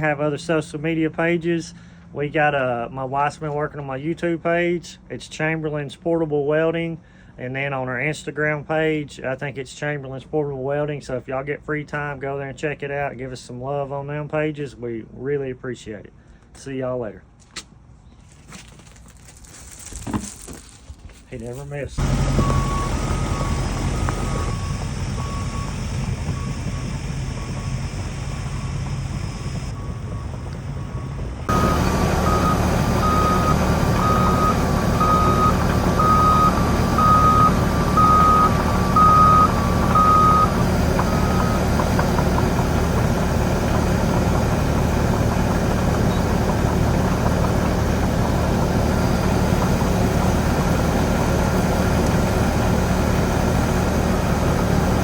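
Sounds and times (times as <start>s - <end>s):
reversing alarm beeping: 22.0s - 41.8s
engine running: 22.0s - 55.0s.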